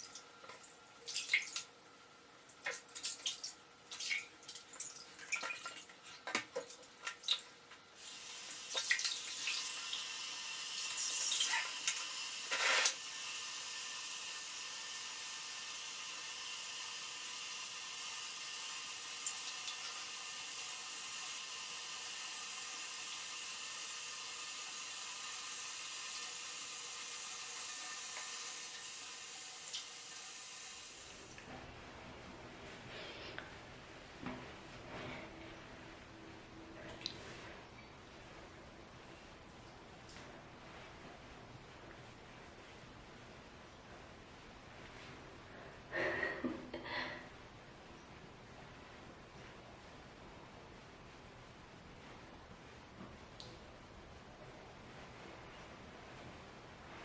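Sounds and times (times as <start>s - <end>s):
tap water splashing: 0.0s - 1.7s, 2.6s - 7.5s, 8.7s - 9.7s
water dripping: 0.0s - 7.5s, 8.6s - 10.1s.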